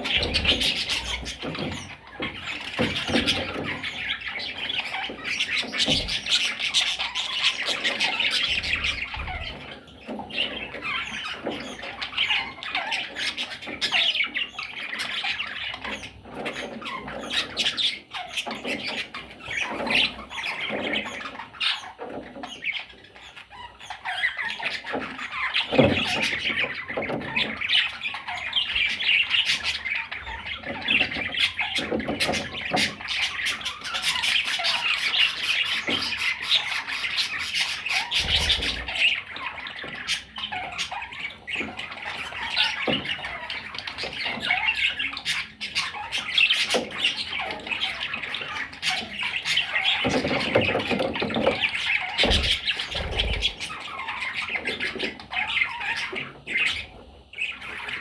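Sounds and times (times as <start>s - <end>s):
parrots chattering and squawking: 0.0s - 58.0s.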